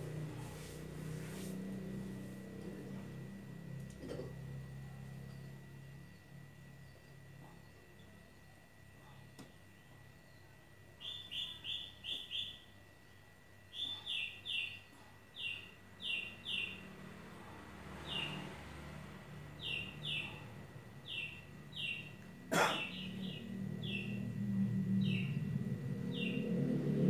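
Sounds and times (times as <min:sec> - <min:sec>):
small bird chirping: 0:10.2 - 0:12.8, 0:13.7 - 0:16.9, 0:19.5 - 0:26.6.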